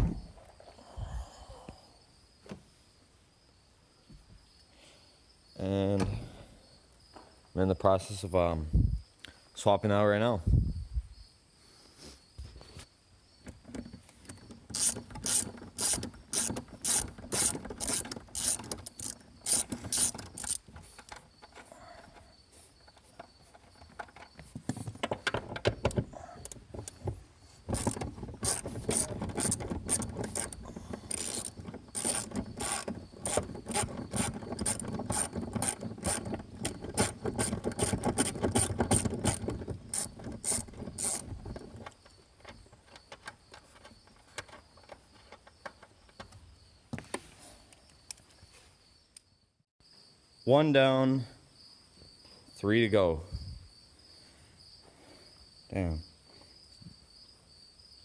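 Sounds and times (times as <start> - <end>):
ratchet wrench clicking: 14.7 - 20.7, 27.8 - 41.3.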